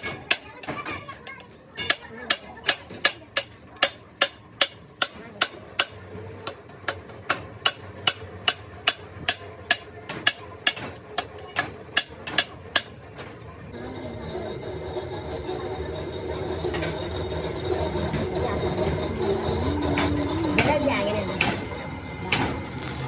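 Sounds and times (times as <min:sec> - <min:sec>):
hammer striking metal: 0:00.0 - 0:01.1, 0:01.8 - 0:13.3.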